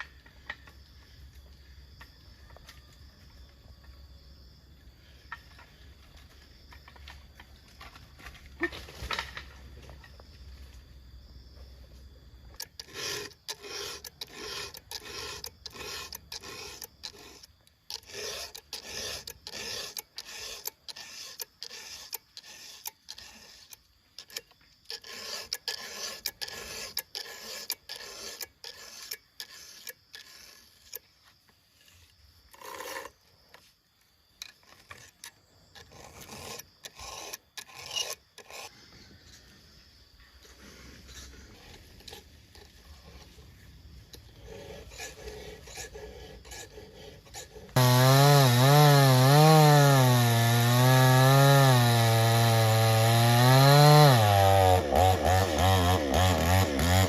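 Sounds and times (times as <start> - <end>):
hand saw rasping through wood: 12.5 - 31.1, 31.8 - 33.2, 34.5 - 38.8, 44.2 - 57.0.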